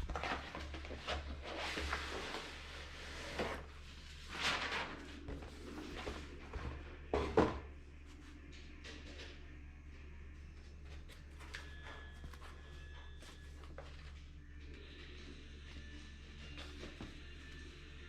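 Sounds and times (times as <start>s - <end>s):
objects rustling and scraping: 0.0s - 17.8s.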